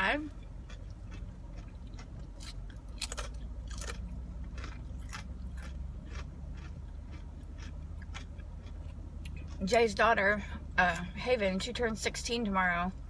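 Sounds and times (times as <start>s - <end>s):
car heater hum: 0.0s - 13.0s
chewing crunchy food: 0.2s - 10.0s.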